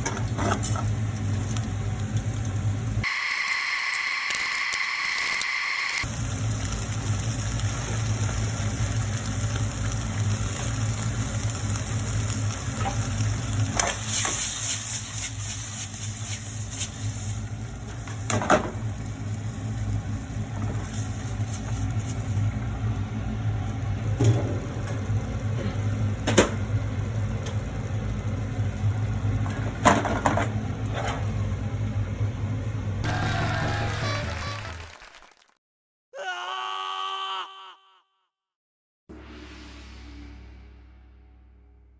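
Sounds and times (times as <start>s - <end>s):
food sizzling in a frying pan: 6.0s - 21.9s
low hum: 39.1s - 41.9s.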